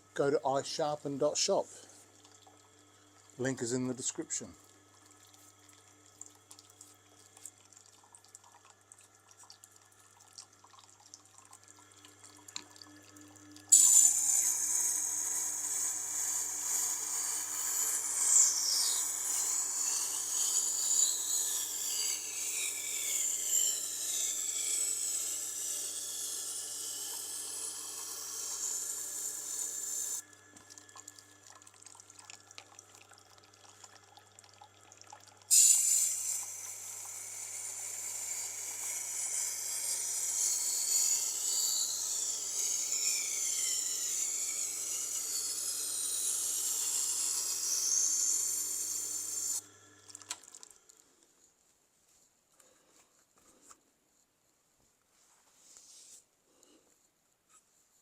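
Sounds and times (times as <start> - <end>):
grinder motor hum: 12.5 - 31.4, 35.5 - 50.4
knife on grinding stone hissing: 13.7 - 30.2, 35.5 - 49.7.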